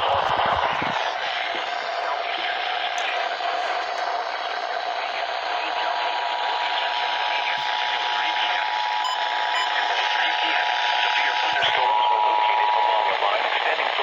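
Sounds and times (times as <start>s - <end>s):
radio static hiss: 0.0s - 14.0s.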